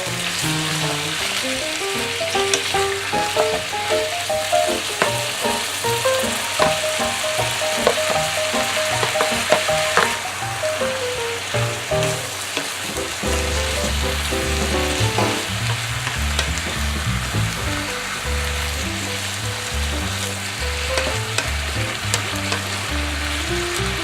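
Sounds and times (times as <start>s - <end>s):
food sizzling in a pan: 0.0s - 15.6s
background music: 0.3s - 12.3s, 13.0s - 15.5s.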